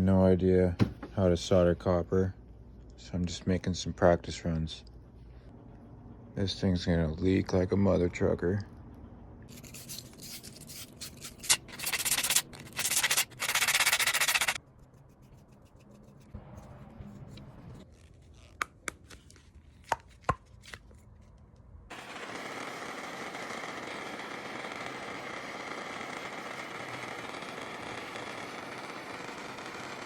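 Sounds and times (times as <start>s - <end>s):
sandpaper scraping copper pipe: 9.5s - 18.5s
steady rushing hiss: 21.9s - 30.0s.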